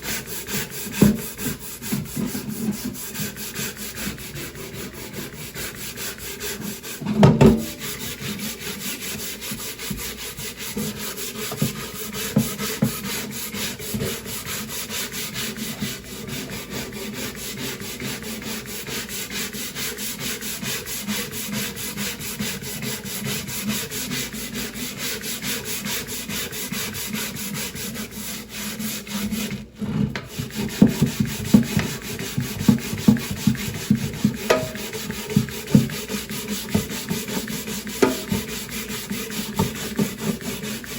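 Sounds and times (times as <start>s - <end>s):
scrubbing wooden chopping board: 0.0s - 40.9s
knocking on wood: 7.2s - 7.8s, 38.0s - 38.5s.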